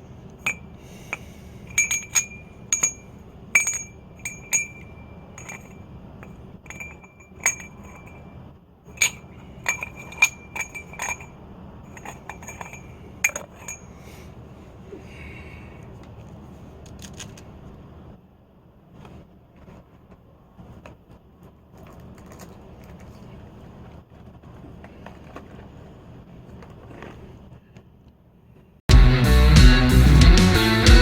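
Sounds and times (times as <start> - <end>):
light metallic clinks and taps: 0.4 - 8.3, 8.9 - 11.3, 11.9 - 13.9.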